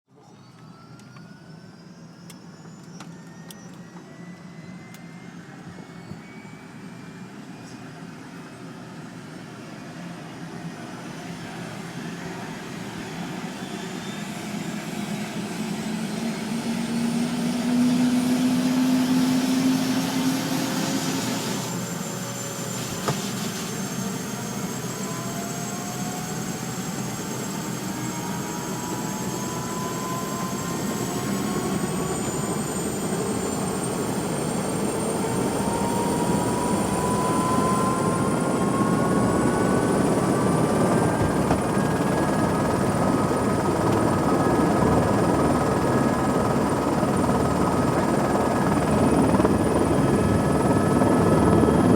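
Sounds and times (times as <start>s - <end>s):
helicopter rotor and engine noise: 0.1s - 51.9s
whining tones rising in pitch: 23.9s - 51.9s.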